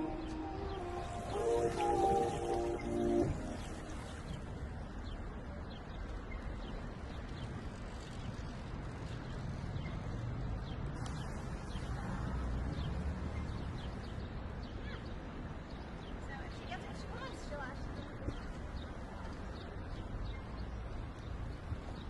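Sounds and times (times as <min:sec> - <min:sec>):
steady low rumble: 0:00.0 - 0:05.5.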